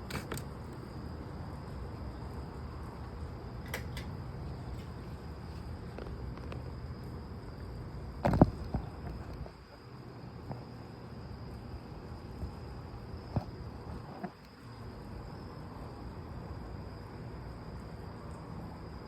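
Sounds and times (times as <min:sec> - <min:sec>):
crickets trilling: 0:00.0 - 0:19.0
low background hum: 0:00.0 - 0:19.0
small clicks: 0:03.6 - 0:05.0.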